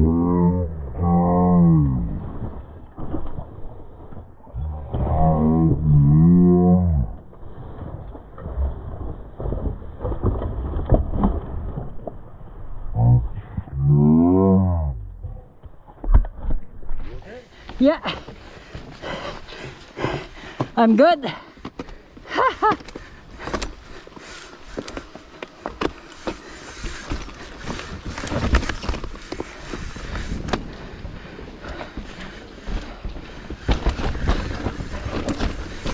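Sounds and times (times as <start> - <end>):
low rumble: 0.0 - 17.2
bike tyres on dirt trail: 1.1 - 14.0, 15.2 - 35.9
bike knocks and rattles: 31.7 - 35.9.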